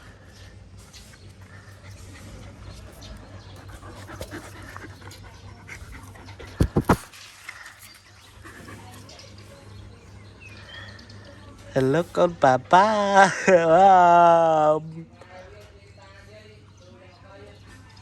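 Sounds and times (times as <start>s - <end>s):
dog panting: 1.2s - 7.1s, 7.7s - 9.6s
loud thumps: 6.6s - 7.1s.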